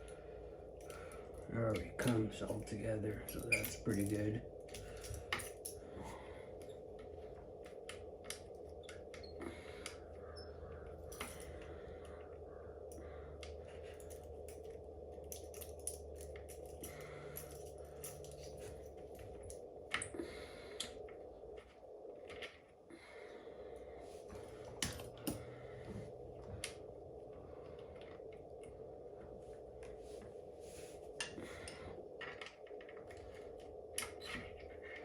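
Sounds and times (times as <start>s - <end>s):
small metal parts clinking: 0.0s - 5.8s, 12.9s - 20.1s
steady hum: 0.0s - 35.0s.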